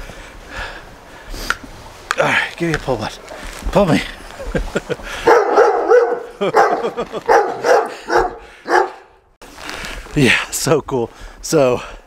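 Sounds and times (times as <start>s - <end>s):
dog barking: 5.2s - 9.1s.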